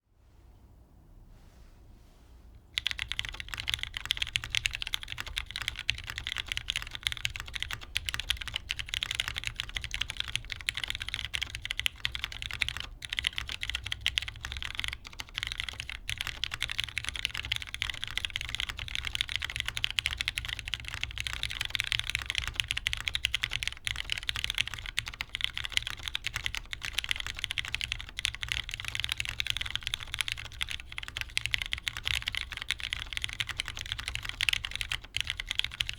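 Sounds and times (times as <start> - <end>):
fast mechanical keyboard typing: 2.8 - 35.9.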